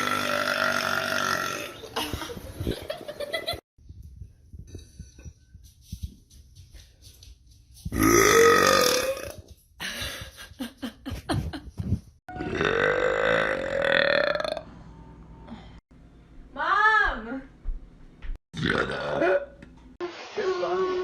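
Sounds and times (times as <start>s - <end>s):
woman burping: 12.4s - 14.6s.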